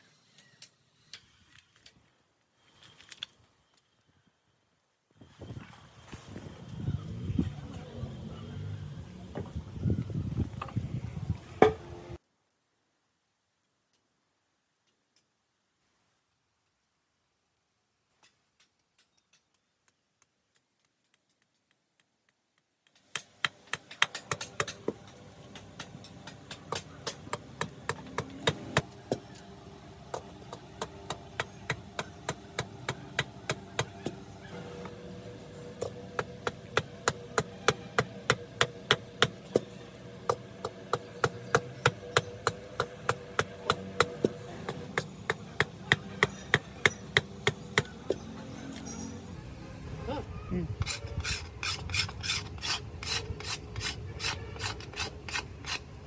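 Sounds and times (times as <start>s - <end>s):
steady low hum: 23.2s - 56.0s.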